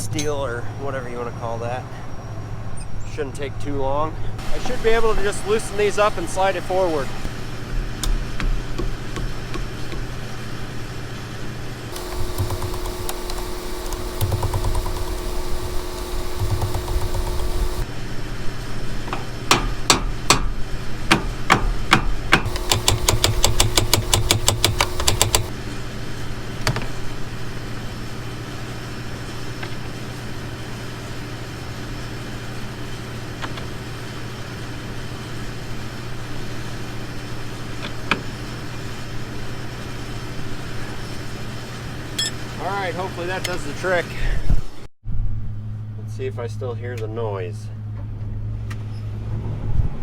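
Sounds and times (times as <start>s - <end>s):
faint clicks: 12.0s - 17.8s, 22.5s - 25.5s
steady engine hum: 12.0s - 17.8s, 22.5s - 25.5s.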